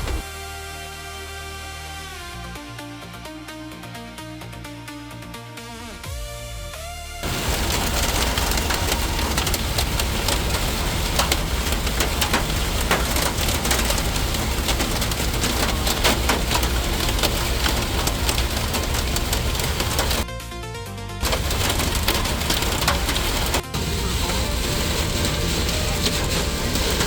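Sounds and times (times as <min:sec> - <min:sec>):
low rumble: 0:00.0 - 0:00.3, 0:21.2 - 0:27.0
heavy rain pattering: 0:07.2 - 0:20.3, 0:21.2 - 0:27.0.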